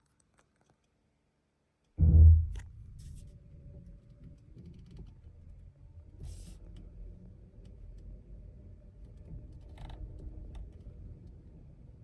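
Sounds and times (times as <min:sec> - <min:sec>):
loud low thump: 0:02.0 - 0:02.8.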